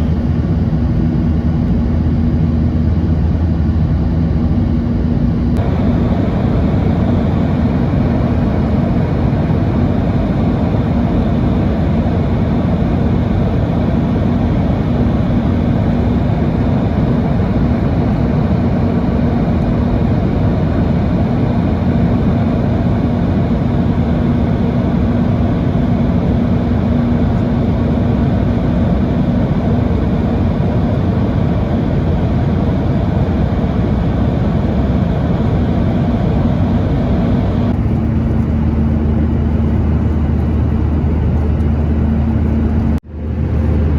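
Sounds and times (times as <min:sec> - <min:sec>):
constant hum: 0:00.0 - 0:43.9
jet engine cabin rumble: 0:00.0 - 0:43.9.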